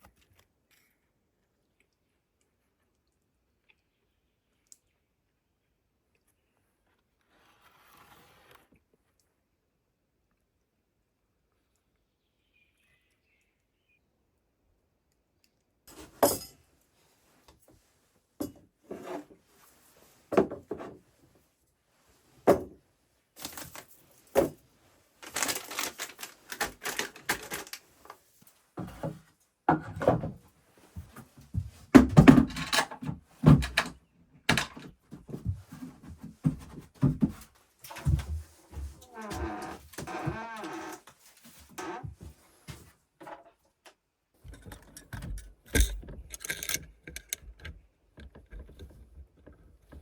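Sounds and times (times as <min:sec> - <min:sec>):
objects knocking and clattering: 0:15.9 - 0:16.6, 0:20.3 - 0:21.0, 0:23.4 - 0:24.6, 0:25.2 - 0:27.9, 0:28.8 - 0:30.4, 0:31.0 - 0:40.4, 0:44.4 - 0:50.0.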